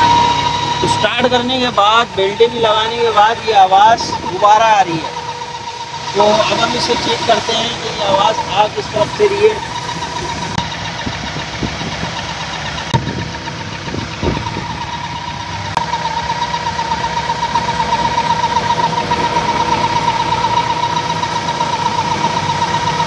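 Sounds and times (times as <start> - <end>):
high wavering tone: 0.0 - 13.0
car engine idling: 0.0 - 23.0.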